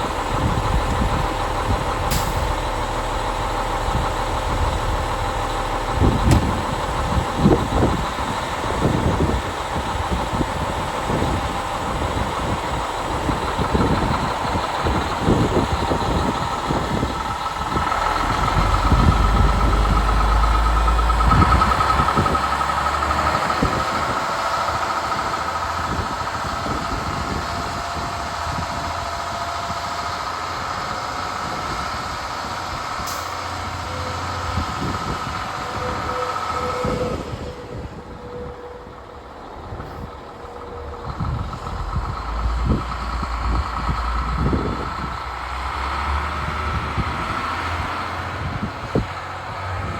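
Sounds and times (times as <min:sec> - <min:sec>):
truck diesel engine running: 0:00.0 - 0:49.9
low thumps: 0:00.4 - 0:09.3.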